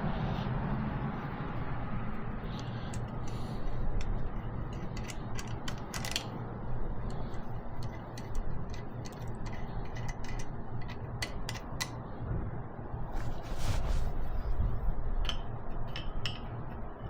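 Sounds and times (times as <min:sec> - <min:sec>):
steady low hum: 0:00.0 - 0:17.0
socket ratchet clicking: 0:02.6 - 0:06.3, 0:07.1 - 0:12.0.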